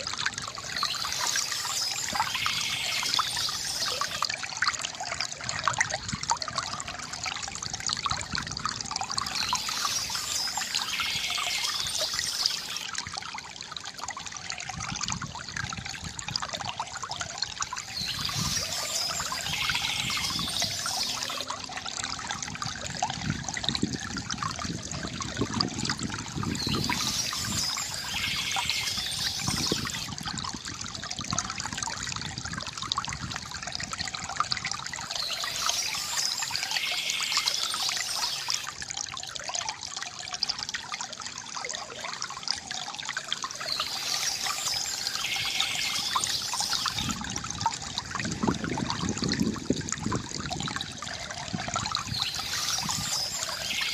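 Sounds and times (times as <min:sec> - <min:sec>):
river water gurgling over stones: 0:00.0 - 0:53.9.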